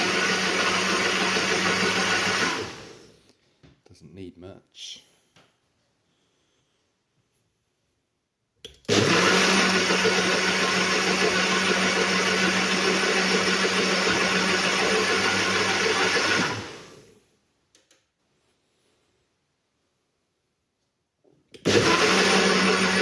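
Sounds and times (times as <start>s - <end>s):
blender motor humming: 0.0s - 3.0s, 8.9s - 17.0s, 21.6s - 23.0s.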